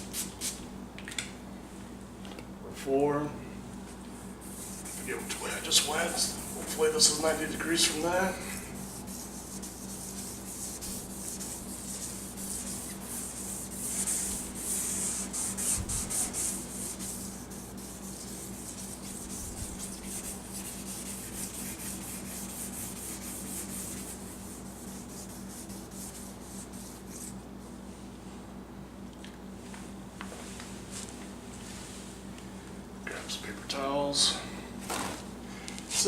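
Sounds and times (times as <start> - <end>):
hand-sanding plastic: 4.4 - 27.4.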